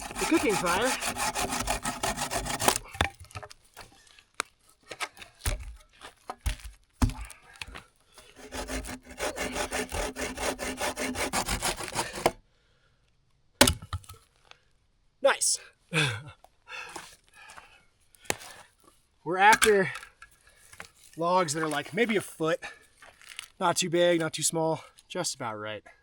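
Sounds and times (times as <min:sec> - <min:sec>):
hand saw cutting log: 0:00.0 - 0:03.2, 0:08.2 - 0:12.4.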